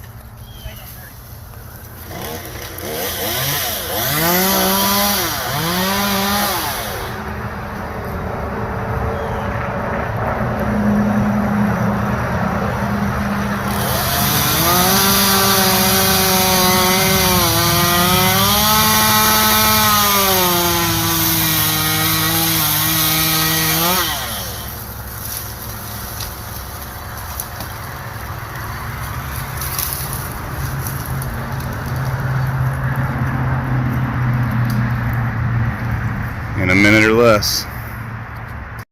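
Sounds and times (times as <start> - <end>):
chainsaw cutting a tree limb: 1.9 - 7.3, 13.5 - 28.2.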